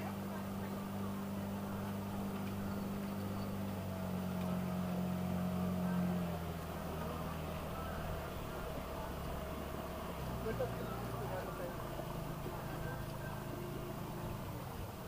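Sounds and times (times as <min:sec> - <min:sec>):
motorboat engine running: 0:00.0 - 0:15.0.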